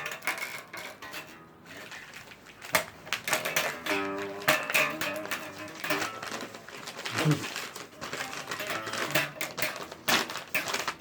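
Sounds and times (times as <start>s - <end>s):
guitar music: 0.0s - 11.0s.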